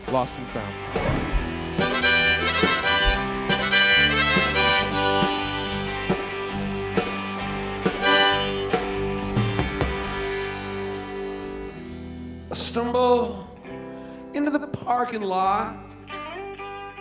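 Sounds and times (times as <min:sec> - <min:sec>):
bending lead guitar line: 0:00.4 - 0:12.1
live rock band playing: 0:00.4 - 0:12.6.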